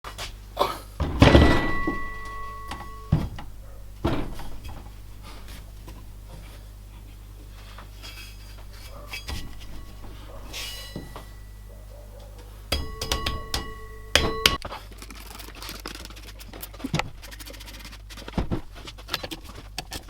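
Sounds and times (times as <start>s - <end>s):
background hum: 0.1s - 20.0s
heavy metal clank ringing: 1.0s - 5.3s, 9.1s - 11.7s, 12.7s - 14.6s.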